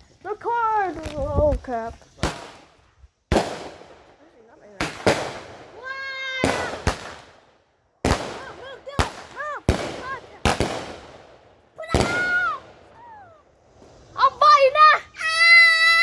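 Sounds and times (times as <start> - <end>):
firework bangs: 1.0 - 16.0
high-pitched cries: 11.8 - 13.5, 14.2 - 16.0.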